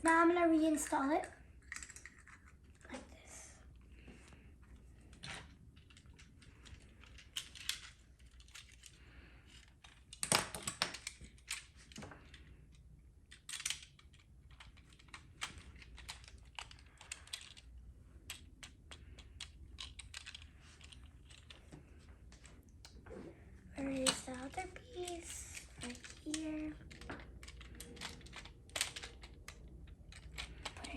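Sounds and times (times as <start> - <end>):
plastic toy parts clicking: 5.3 - 21.6, 23.9 - 30.9.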